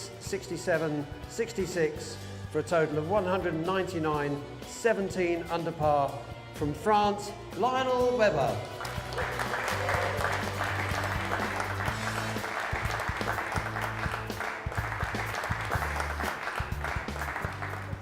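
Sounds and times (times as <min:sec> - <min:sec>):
background music with bass line: 0:00.0 - 0:18.0
audience applause: 0:08.7 - 0:18.0.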